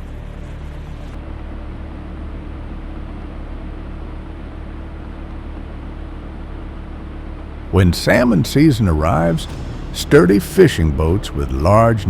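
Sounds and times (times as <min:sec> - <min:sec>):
boat engine droning: 0:00.0 - 0:12.0.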